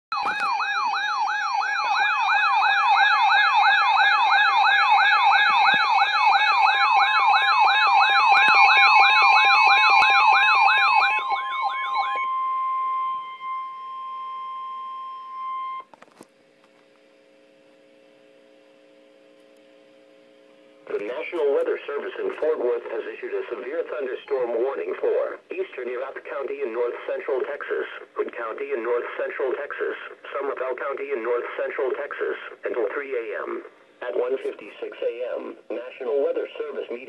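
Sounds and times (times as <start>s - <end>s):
emergency alert siren sweeping: 0.1s - 15.9s
faint hum: 3.2s - 37.0s
steady alert tone: 6.1s - 15.8s.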